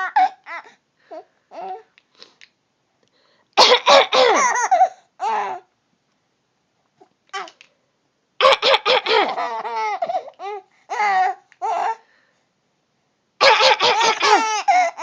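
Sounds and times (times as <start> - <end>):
baby laughing: 0.0 - 0.7, 3.8 - 5.6, 8.4 - 12.0, 13.4 - 15.0.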